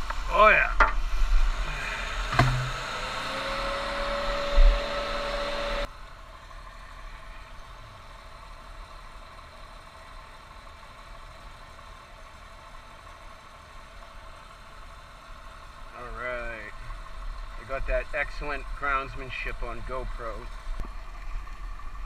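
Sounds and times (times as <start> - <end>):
engine running: 0.0 - 22.0
faint engine hum: 0.0 - 22.0
sharp knock: 2.3 - 2.8.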